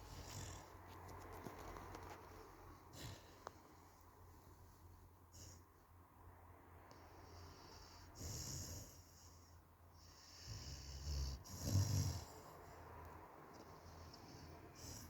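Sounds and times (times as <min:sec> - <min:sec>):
dog snoring: 0:00.0 - 0:01.1, 0:02.9 - 0:03.5, 0:07.3 - 0:12.8, 0:13.6 - 0:15.0.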